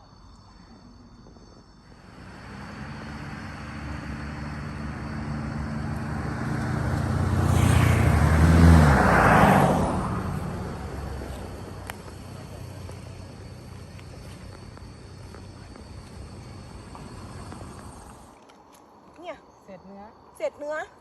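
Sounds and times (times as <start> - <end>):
vehicle driving past: 1.9 - 18.3.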